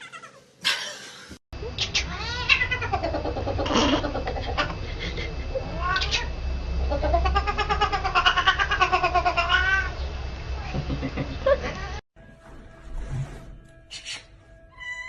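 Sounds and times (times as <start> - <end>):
cat yowling: 1.6 - 4.7, 5.7 - 6.3, 6.9 - 10.0, 14.8 - 15.0.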